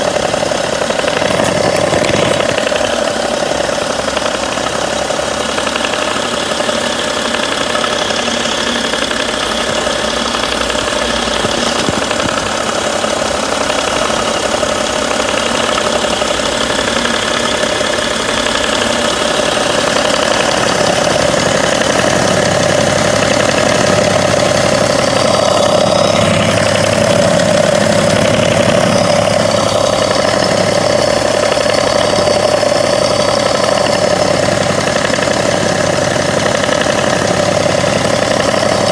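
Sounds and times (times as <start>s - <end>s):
diesel engine idling: 0.0s - 38.9s
engine ticking: 0.0s - 38.9s.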